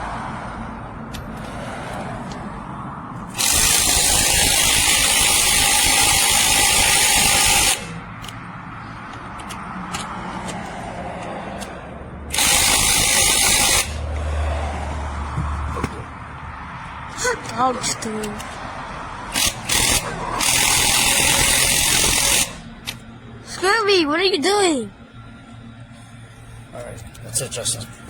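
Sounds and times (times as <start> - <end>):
impact wrench rattling: 3.3 - 8.4, 9.0 - 10.8, 11.6 - 14.0, 19.3 - 23.0.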